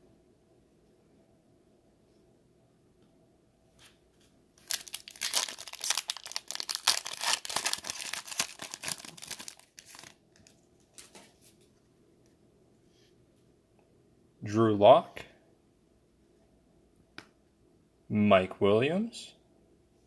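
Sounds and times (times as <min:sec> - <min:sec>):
foil wrapper tearing and crinkling: 0:04.6 - 0:11.1.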